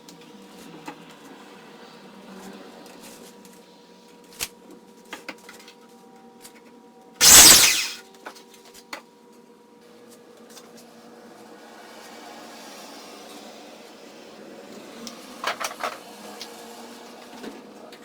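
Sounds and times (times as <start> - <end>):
power tool burst: 7.2 - 8.0.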